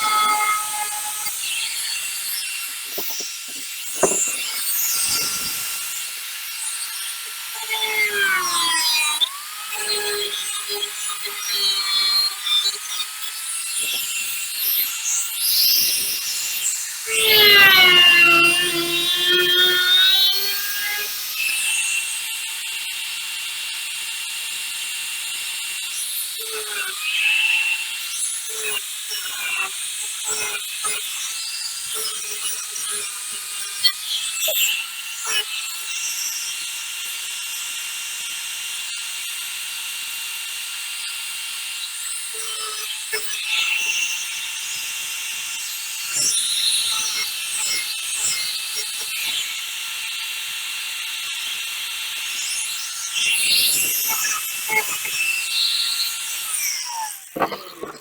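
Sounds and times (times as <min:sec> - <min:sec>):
grinder scratching metal: 0:00.0 - 0:08.7, 0:52.3 - 0:58.0
power grinder whining: 0:00.0 - 0:23.5, 0:26.4 - 0:58.0.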